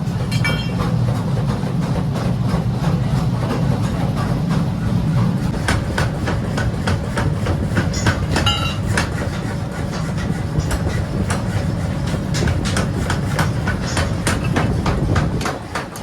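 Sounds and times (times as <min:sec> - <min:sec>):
machinery rumbling: 0:00.0 - 0:16.0
ringing metal clang: 0:00.3 - 0:00.8, 0:08.4 - 0:08.8
sharp metal knocks: 0:00.3 - 0:01.0, 0:05.6 - 0:11.4, 0:12.3 - 0:16.0.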